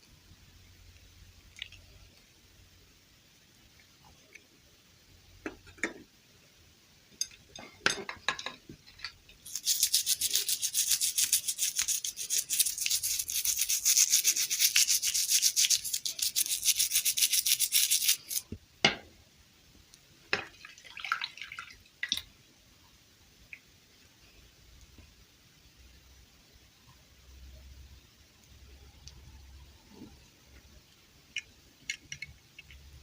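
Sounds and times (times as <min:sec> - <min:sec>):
scratchy rubbing strokes: 0:09.4 - 0:18.5.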